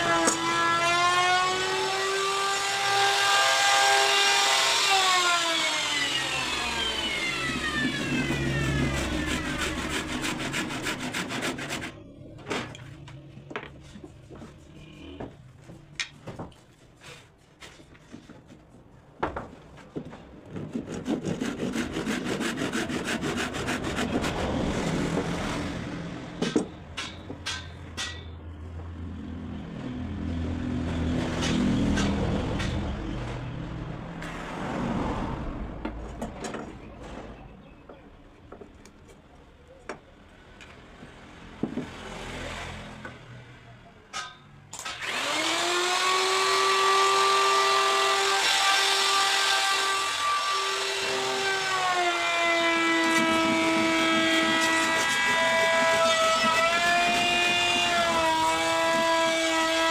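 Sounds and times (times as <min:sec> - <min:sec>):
power tool whining: 0:00.0 - 0:10.8, 0:44.8 - 0:59.9.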